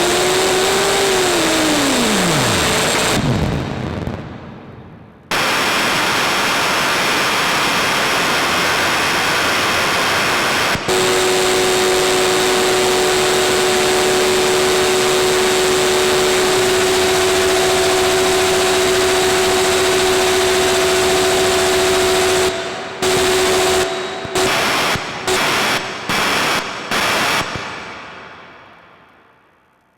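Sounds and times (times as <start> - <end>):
synthesizer drone of held tones: 0.0 - 3.2, 8.4 - 27.4
harsh synthesizer static: 0.0 - 3.5, 5.3 - 27.6.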